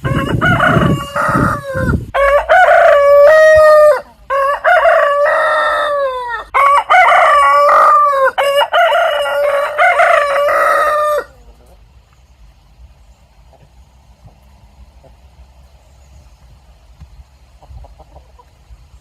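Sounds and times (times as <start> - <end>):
roosters crowing: 0.0 - 12.0.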